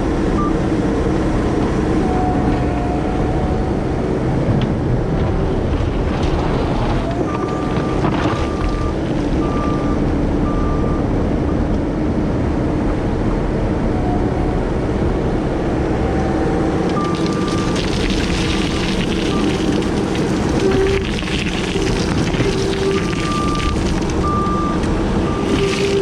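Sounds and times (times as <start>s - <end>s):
diesel engine running: 0.0s - 26.0s
backup alarm beeping: 23.1s - 25.8s.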